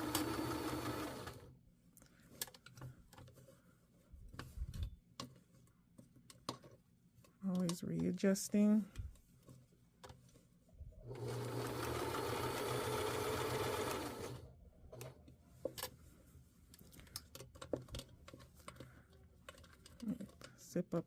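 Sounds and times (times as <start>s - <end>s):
sewing machine running: 0.0s - 1.5s, 11.1s - 14.4s.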